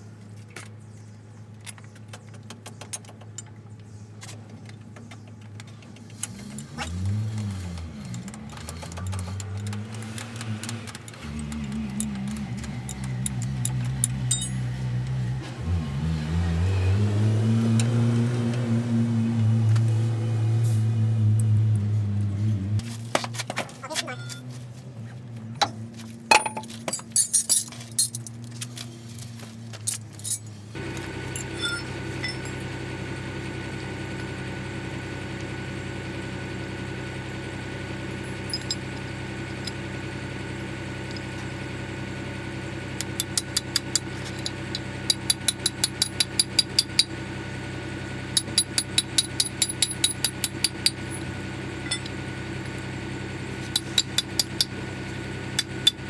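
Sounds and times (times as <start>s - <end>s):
engine-like drone: 6.0s - 23.0s, 30.2s - 56.0s.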